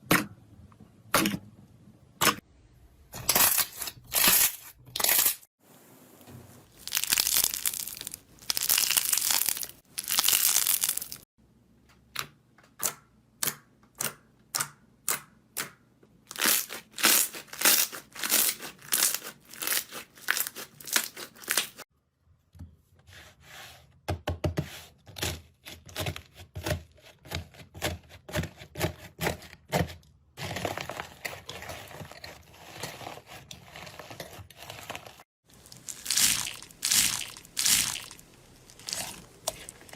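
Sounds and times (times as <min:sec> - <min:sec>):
slime crackling and popping: 0:06.8 - 0:11.2, 0:35.5 - 0:39.9.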